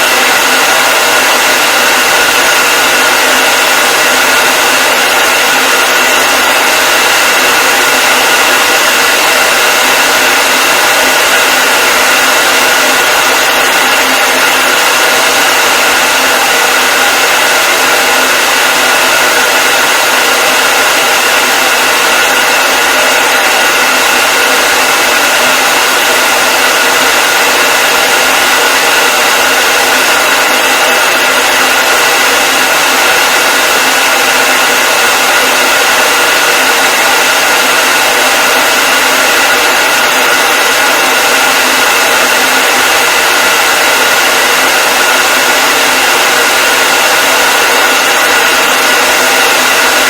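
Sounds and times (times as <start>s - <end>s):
hair dryer running: 0.0s - 50.0s.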